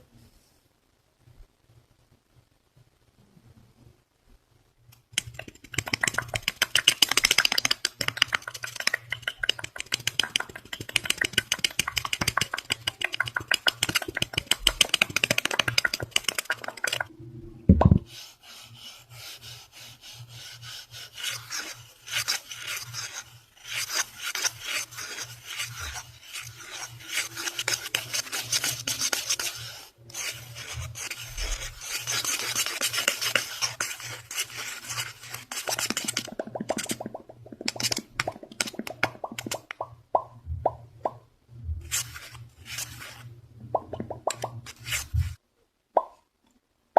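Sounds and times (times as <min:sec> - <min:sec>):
rapid scratching on a surface: 0:05.2 - 0:17.1, 0:18.1 - 0:39.6
loud thump: 0:17.7 - 0:18.1.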